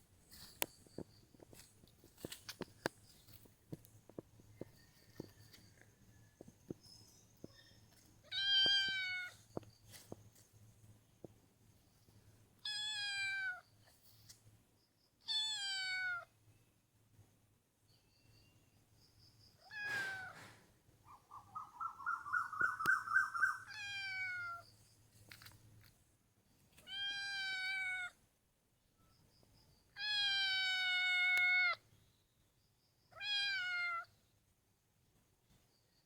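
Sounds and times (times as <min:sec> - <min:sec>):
cat meowing: 0:15.3 - 0:16.3, 0:23.7 - 0:24.6, 0:26.9 - 0:28.2, 0:30.0 - 0:31.8, 0:33.1 - 0:34.1
cat trilling: 0:23.6 - 0:24.6, 0:33.1 - 0:34.1.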